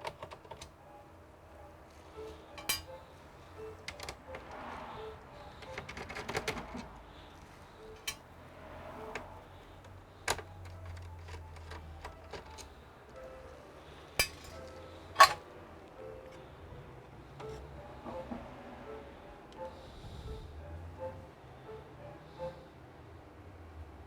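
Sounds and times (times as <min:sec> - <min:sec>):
faint background music: 0:00.0 - 0:24.0
clinks of small parts and tools: 0:02.2 - 0:03.0, 0:08.0 - 0:08.3, 0:14.2 - 0:15.4.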